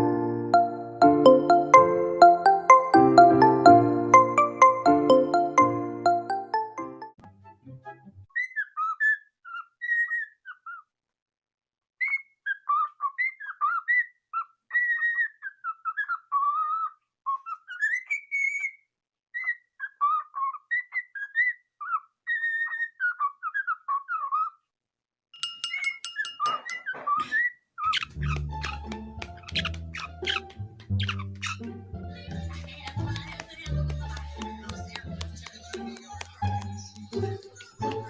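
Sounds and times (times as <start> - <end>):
parrot whistling: 27.9 - 28.9.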